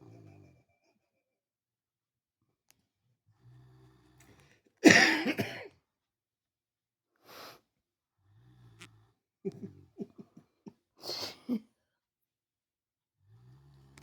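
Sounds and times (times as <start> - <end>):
dog snoring softly: 3.3 - 4.6, 8.2 - 9.8, 13.2 - 14.0.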